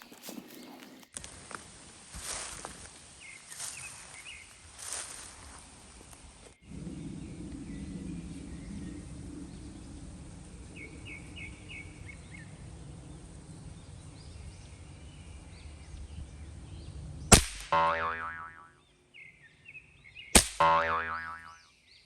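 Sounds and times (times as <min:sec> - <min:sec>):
low outdoor rumble: 0:00.8 - 0:21.5
rifle shot: 0:17.3 - 0:17.8, 0:20.4 - 0:20.7
bird chirps: 0:17.8 - 0:22.0.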